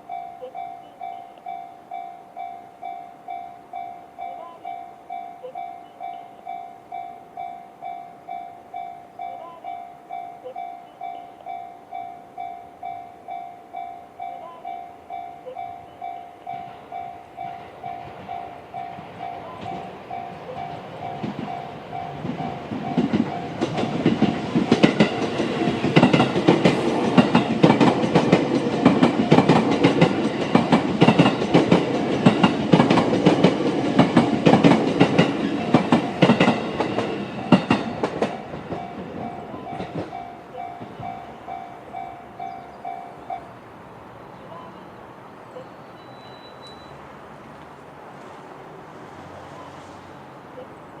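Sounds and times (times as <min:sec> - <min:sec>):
level crossing bell ringing: 0:00.0 - 0:23.6
train wheels clattering over rails: 0:16.1 - 0:43.0.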